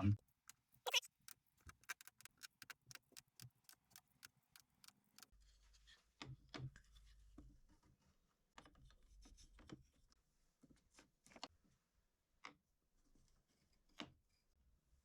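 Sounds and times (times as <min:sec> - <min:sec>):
small metal nuts clicking: 0:00.3 - 0:05.3.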